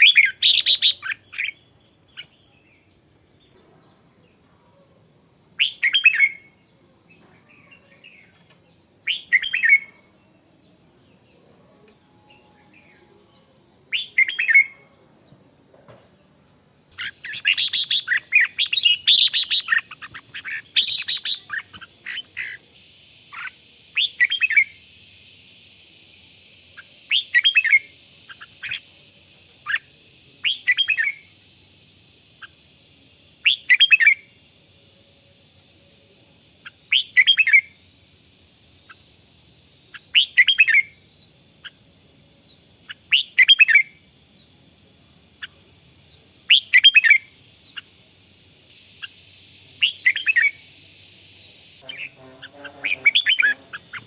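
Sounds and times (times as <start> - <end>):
bird singing whistled phrases: 0.0 - 2.8, 5.6 - 6.5, 9.0 - 10.0, 13.9 - 14.8, 17.0 - 22.6, 23.3 - 24.8, 26.8 - 28.8, 29.6 - 31.3, 33.4 - 34.3, 36.6 - 37.7, 49.8 - 50.7
faint high whine: 0.0 - 54.0.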